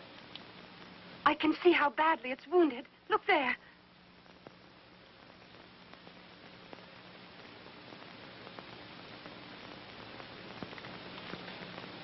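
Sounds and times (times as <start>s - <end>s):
faint low hum: 0.0s - 12.0s
steady film soundtrack hiss: 0.0s - 12.0s
faint clicks: 0.1s - 0.9s, 10.2s - 11.9s.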